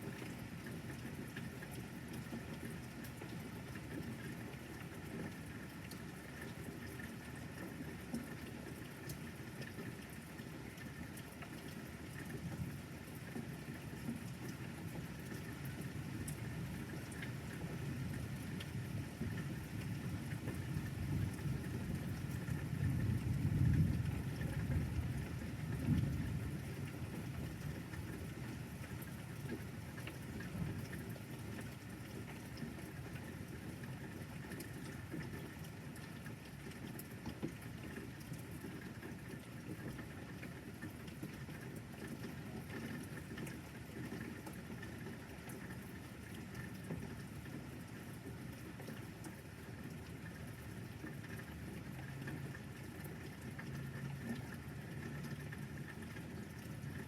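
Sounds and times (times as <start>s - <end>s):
steady rain falling: 0.0s - 57.0s
rain drop ticks: 0.1s - 57.0s
low rumble of thunder: 18.1s - 28.1s.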